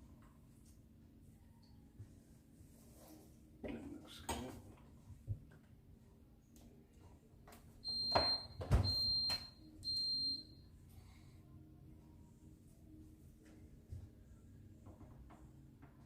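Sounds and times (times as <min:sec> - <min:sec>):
refrigerator alarm beeping: 0:07.8 - 0:10.7.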